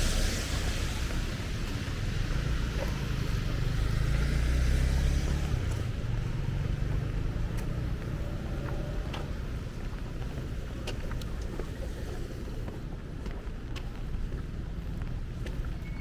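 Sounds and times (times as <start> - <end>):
heavy rain hiss: 0.0 - 3.6
vehicle engine rumble passing: 0.0 - 12.7.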